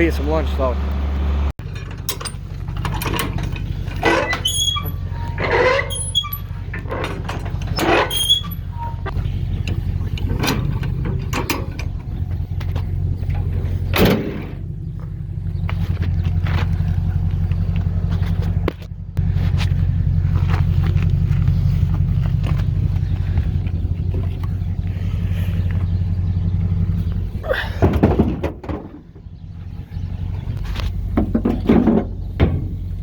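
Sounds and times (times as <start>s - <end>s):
vehicle engine running: 0.0s - 33.0s
squeaks and clanks: 1.6s - 17.1s, 25.8s - 33.0s.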